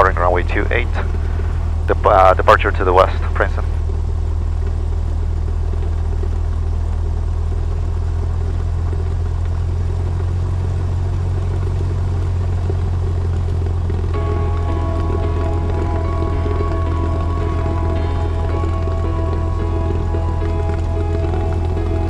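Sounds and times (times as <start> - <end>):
music: 0.0 - 3.8, 13.9 - 22.0
propeller plane engine drone: 0.0 - 22.0.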